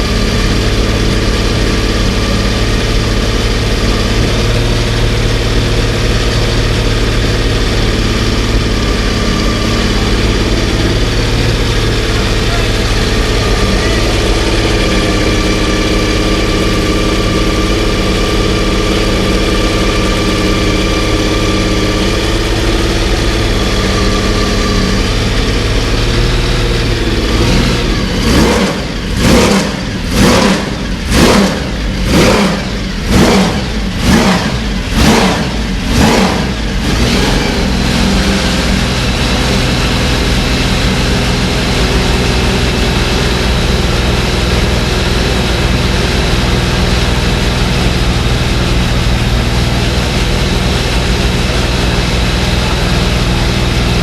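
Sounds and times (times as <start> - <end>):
racing engine idling and revving: 0.0 - 54.0.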